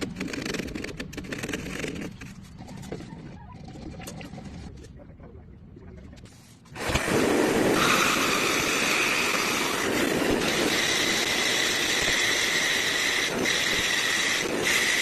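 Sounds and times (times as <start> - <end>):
bandsaw running with high whine: 6.8 - 15.0.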